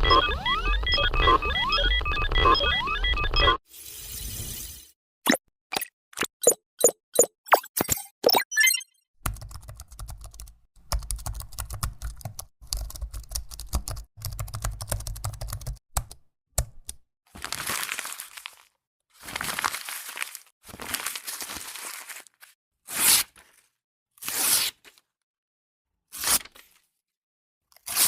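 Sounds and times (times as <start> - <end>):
rustling crinkling bursts: 17.4 - 22.6.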